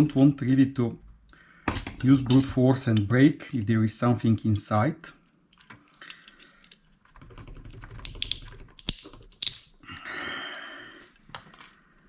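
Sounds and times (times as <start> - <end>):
plastic keyboard key clicks and snaps: 8.0 - 9.7.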